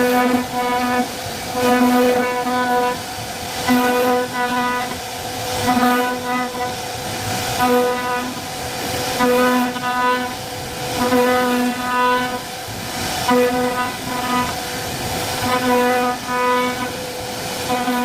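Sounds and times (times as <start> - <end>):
high hiss of cutting: 0.0 - 18.0.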